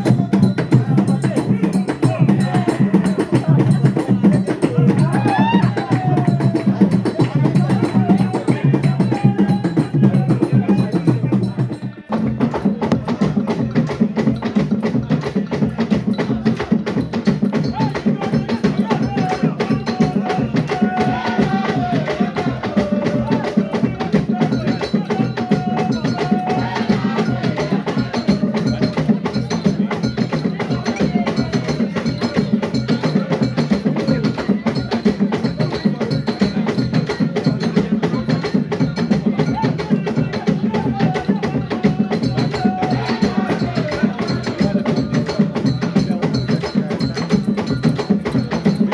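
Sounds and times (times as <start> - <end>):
hand drums playing fast: 0.0 - 48.9
voices singing: 0.0 - 48.9.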